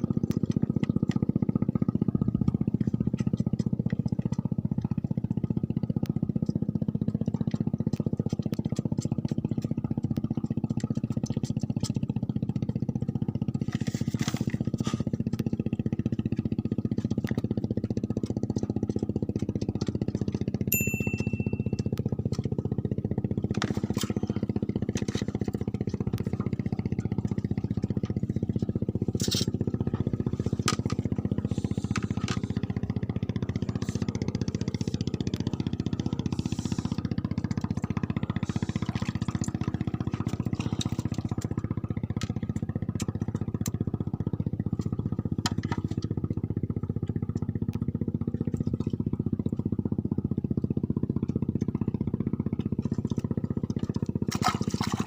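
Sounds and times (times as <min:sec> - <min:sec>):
engine running: 0:00.0 - 0:55.0
short high beep: 0:20.7 - 0:21.8.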